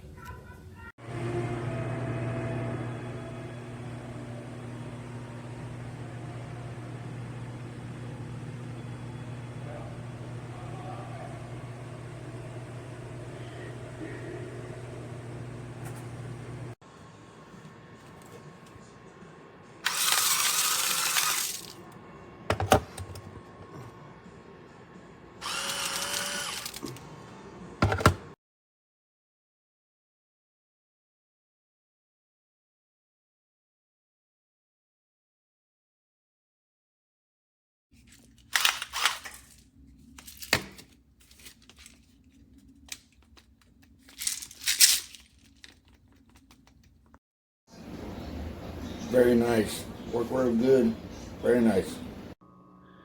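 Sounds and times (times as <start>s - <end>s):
electric grinder motor grinding: 1.0s - 16.7s, 19.9s - 21.7s, 25.4s - 27.0s.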